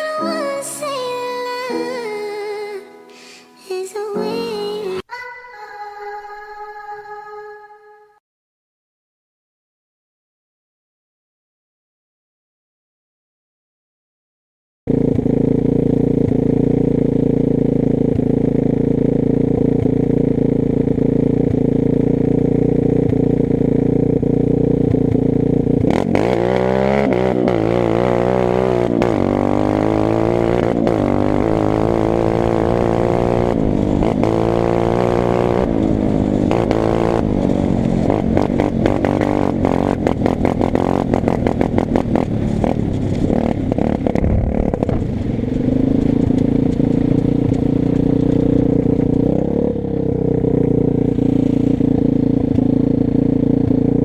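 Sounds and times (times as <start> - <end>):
motorcycle engine idling and revving: 14.9 - 54.0.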